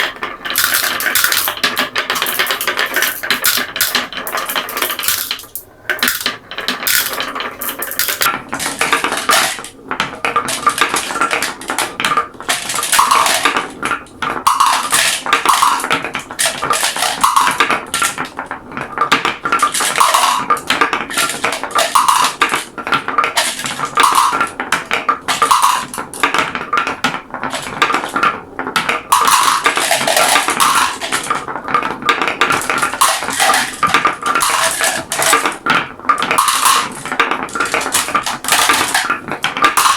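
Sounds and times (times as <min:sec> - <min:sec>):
marbles rattling down a track: 0:00.0 - 0:39.9.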